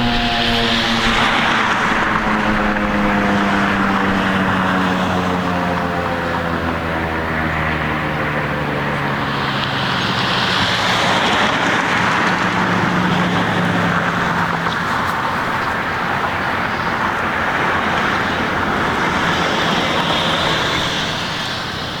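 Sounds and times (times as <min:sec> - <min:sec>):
low hum: 0:00.0 - 0:05.7
cars passing: 0:00.0 - 0:22.0.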